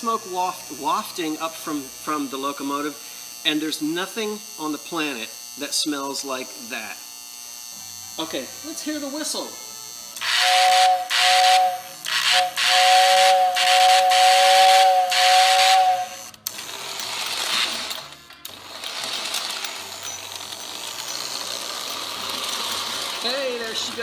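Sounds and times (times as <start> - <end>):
toy train mechanical running: 0.0 - 24.0
toy train whistle blowing: 10.2 - 16.4.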